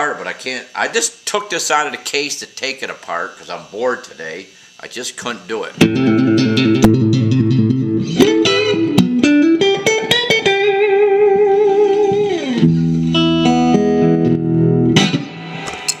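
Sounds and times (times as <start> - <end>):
electric guitar notes: 5.8 - 16.0.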